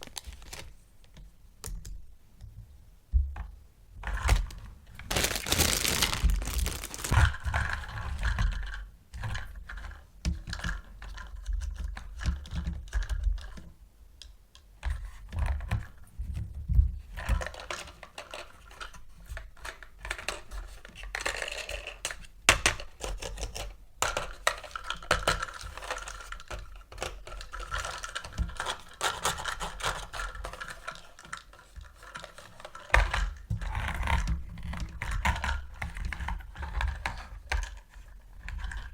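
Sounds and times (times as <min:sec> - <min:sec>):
packaging rustling: 0:00.0 - 0:00.8, 0:05.0 - 0:07.4
plastic toys clicking and tapping: 0:17.2 - 0:38.9.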